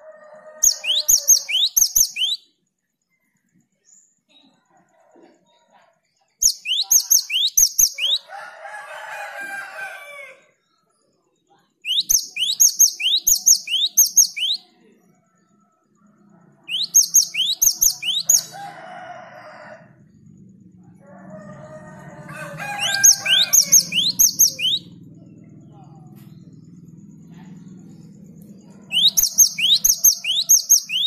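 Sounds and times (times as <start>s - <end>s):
lower drawn-out bird calls: 0.6s - 2.4s, 16.7s - 18.6s, 22.3s - 25.2s, 28.8s - 31.0s
bird song high ringing bursts: 6.4s - 8.3s, 11.9s - 14.6s, 16.7s - 18.6s, 22.7s - 25.0s, 28.9s - 31.0s.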